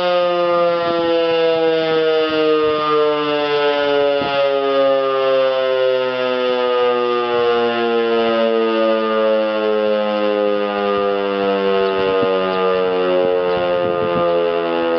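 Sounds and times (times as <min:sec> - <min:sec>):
warning siren sliding lower: 0:00.0 - 0:14.9.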